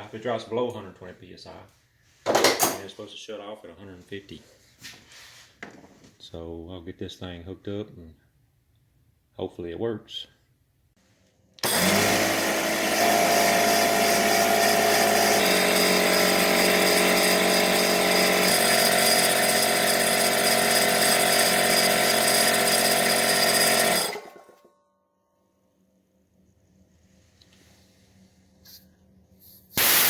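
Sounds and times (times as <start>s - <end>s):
air compressor running: 11.6s - 24.6s, 29.7s - 30.0s.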